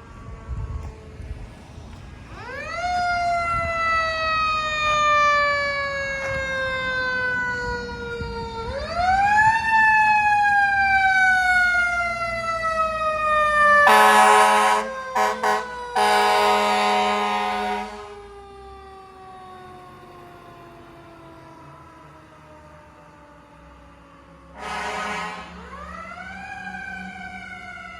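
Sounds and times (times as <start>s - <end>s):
fire engine siren wailing: 0.0s - 27.9s
air horn blasts: 13.8s - 18.2s, 24.6s - 25.7s.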